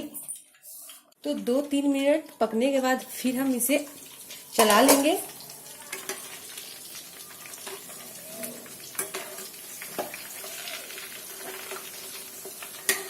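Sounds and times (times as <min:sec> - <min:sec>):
chicken sizzling in hot oil: 0:03.0 - 0:13.0.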